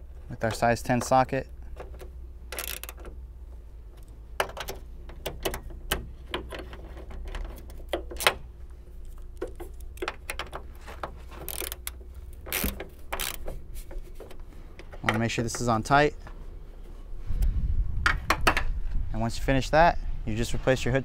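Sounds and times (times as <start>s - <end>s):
steady low hum: 0.0s - 21.0s
ratchet clicking: 1.8s - 3.2s, 11.4s - 13.6s.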